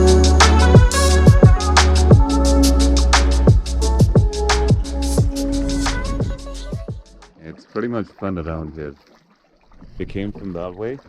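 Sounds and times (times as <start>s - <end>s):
electronic music with deep bass: 0.0s - 7.3s.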